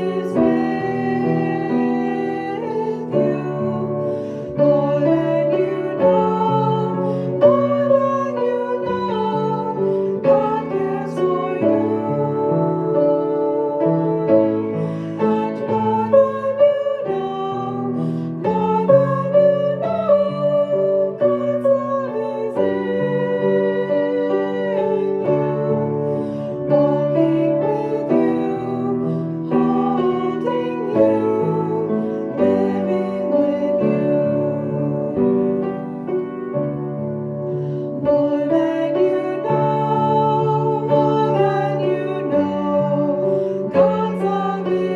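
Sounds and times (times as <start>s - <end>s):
women singing: 0.0s - 36.7s, 38.0s - 44.9s
piano accompaniment: 0.0s - 44.9s.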